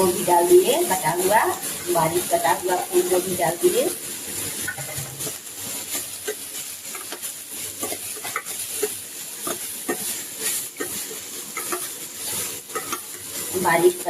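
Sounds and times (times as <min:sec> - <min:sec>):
vegetables sizzling in oil: 0:00.0 - 0:14.0
spatula scraping and knocking pan: 0:04.5 - 0:13.5.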